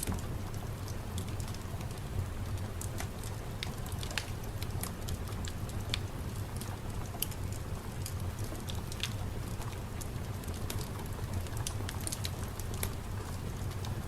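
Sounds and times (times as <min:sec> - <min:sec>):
steady rain: 0:00.0 - 0:14.0
sharp crackling ticks: 0:08.0 - 0:10.1.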